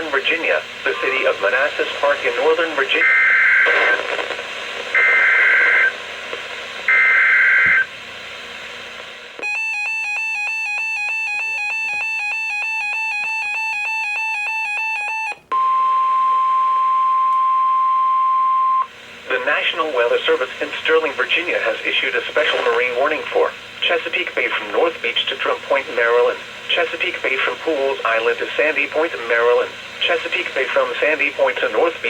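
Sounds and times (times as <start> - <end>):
steady warning alarm tone: 9.4 - 18.9.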